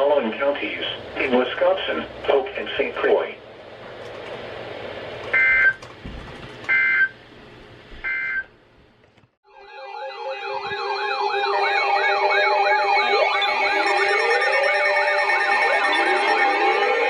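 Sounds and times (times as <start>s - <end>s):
fast wailing siren: 9.5s - 17.0s
slow rising siren wail: 9.5s - 17.0s
steady siren tones: 9.5s - 17.0s.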